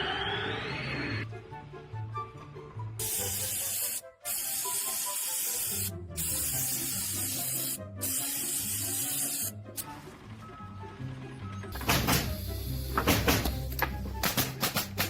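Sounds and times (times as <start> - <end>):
pressurised spray hissing: 3.0 - 9.6, 12.2 - 13.3.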